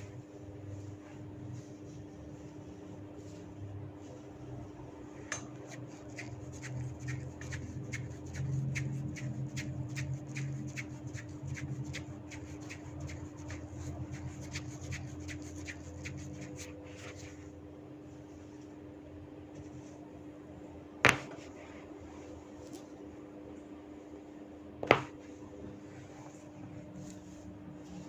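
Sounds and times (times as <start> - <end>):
low rubbing sound: 5.7 - 18.6.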